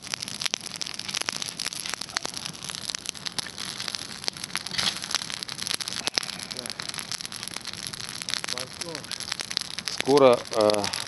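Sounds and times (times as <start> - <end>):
campfire crackling: 0.0 - 11.0.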